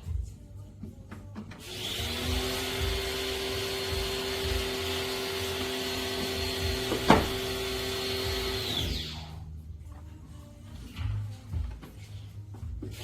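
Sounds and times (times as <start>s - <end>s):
motor winding down whine: 1.6s - 9.4s
small electric motor running: 1.6s - 9.4s.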